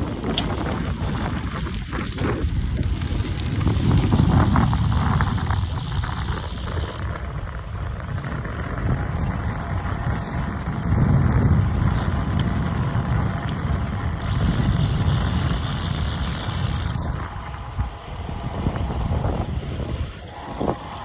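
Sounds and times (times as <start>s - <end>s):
tyres on road: 0.0s - 21.0s
wind buffeting microphone: 0.0s - 21.0s.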